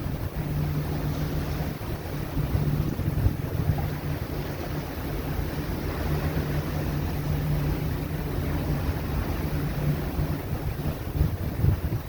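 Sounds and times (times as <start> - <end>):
boat engine drone: 0.0 - 12.0
rough sea wash: 0.0 - 12.0
wind buffeting microphone: 0.0 - 12.0.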